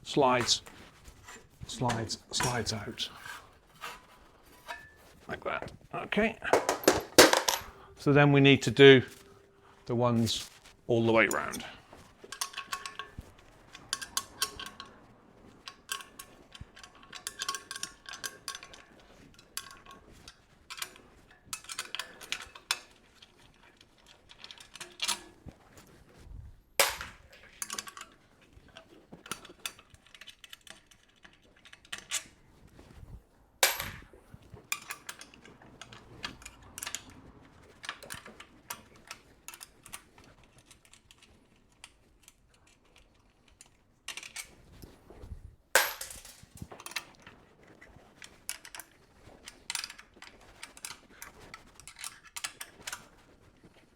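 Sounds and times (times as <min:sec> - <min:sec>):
spanners clinking on bolts: 0:06.4 - 0:07.9, 0:11.1 - 0:14.9, 0:15.6 - 0:22.8, 0:26.8 - 0:28.1, 0:33.6 - 0:34.1, 0:45.8 - 0:47.0
sharp knocks: 0:06.5 - 0:07.7.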